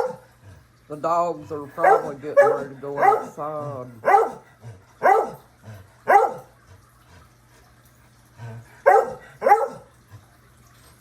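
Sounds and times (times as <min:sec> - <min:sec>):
dog barking: 0:00.0 - 0:00.3, 0:01.8 - 0:03.4, 0:04.0 - 0:05.4, 0:06.0 - 0:06.5, 0:08.8 - 0:09.9.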